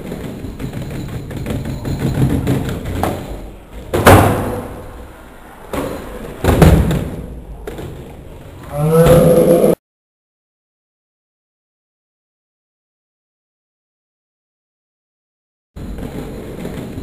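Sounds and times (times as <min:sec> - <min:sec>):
skateboard wheels rolling: 0:00.0 - 0:08.7, 0:15.8 - 0:17.0
skateboard slamming onto ground: 0:03.9 - 0:05.0.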